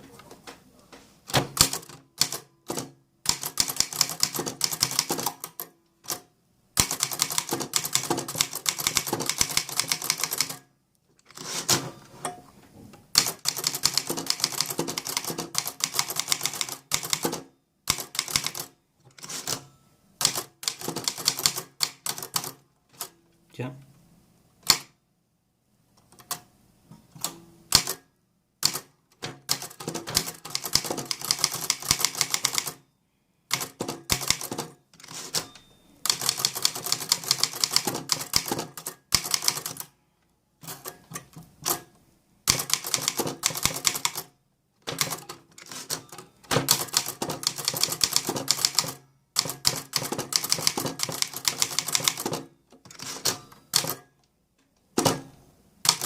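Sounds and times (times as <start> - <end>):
typewriter keystrokes: 1.3 - 10.6, 13.1 - 19.6, 20.2 - 23.1, 24.6 - 24.9, 27.2 - 28.0, 28.6 - 32.8, 33.5 - 39.9, 42.5 - 54.1.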